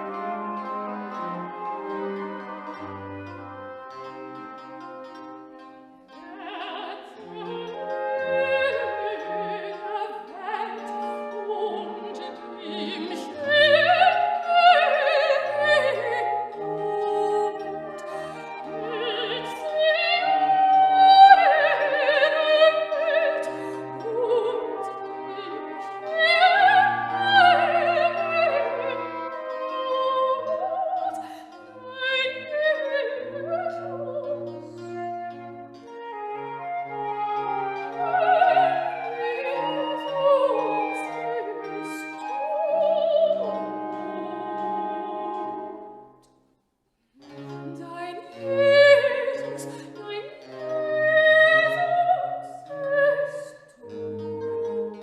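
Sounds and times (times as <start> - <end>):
orchestral strings: 0.0 - 55.0.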